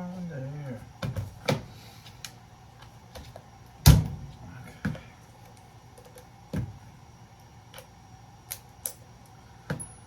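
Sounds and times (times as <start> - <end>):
sharp knocks on breaker panel: 3.9 - 4.3.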